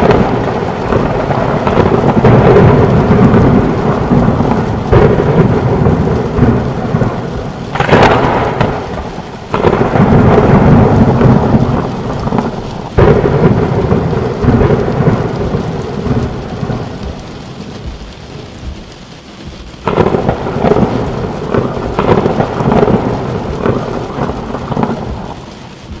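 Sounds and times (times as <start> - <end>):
steady rain: 0.0 - 26.0
thunderclaps rolling into rumble: 0.0 - 26.0.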